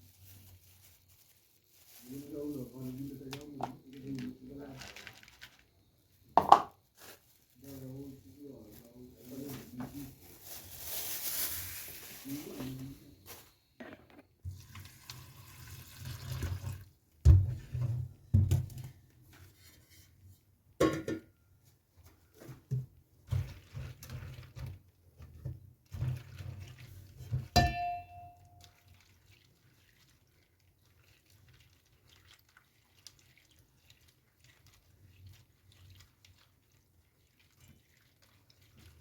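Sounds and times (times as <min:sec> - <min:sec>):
dishes and utensils clattering: 0:20.8 - 0:21.3, 0:27.4 - 0:28.5
ringing clink of metal or glass: 0:27.6 - 0:28.6.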